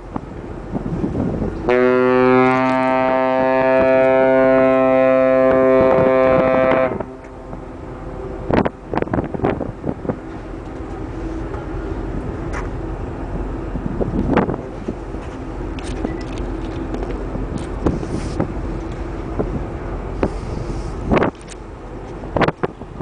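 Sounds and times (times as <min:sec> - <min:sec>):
wind noise: 0:00.0 - 0:01.9, 0:05.4 - 0:23.0
ship's horn blast: 0:01.6 - 0:08.8.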